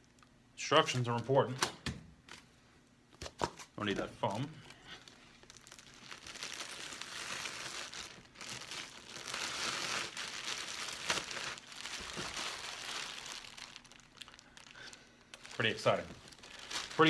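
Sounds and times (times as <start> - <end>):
packing foam crinkling and rustling: 3.2 - 17.0
sharp crackle: 5.3 - 17.0.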